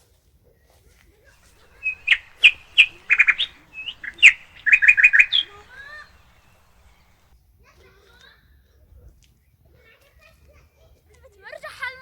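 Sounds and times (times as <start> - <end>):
bird chirping: 1.4 - 7.3.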